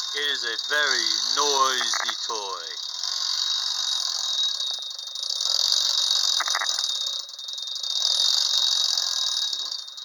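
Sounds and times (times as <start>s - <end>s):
fast ticking rattle: 0.0s - 3.5s
clockwork toy motor whirring buzz: 0.0s - 10.0s.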